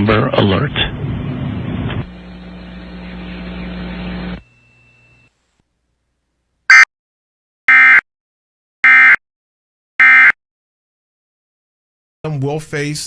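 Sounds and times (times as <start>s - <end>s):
low hum: 0.0s - 6.0s
broadcast static hiss: 0.6s - 5.6s.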